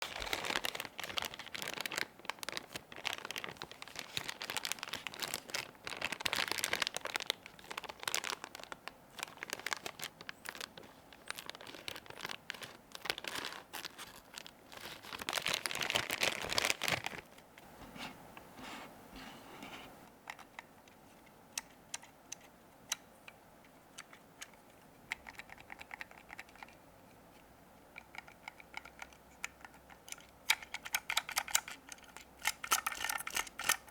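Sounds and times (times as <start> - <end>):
plastic wrapping tearing: 0.0 - 17.3
plastic wrapping crinkling: 0.0 - 17.7, 29.6 - 33.9.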